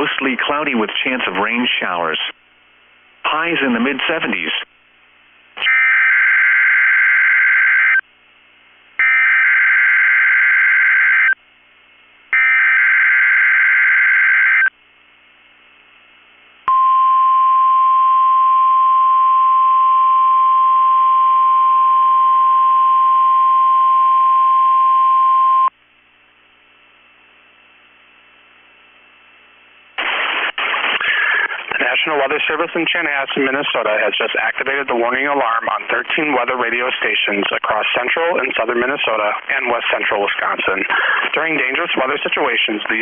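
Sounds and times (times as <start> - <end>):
steady warning alarm tone: 9.0 - 11.4, 12.4 - 14.7.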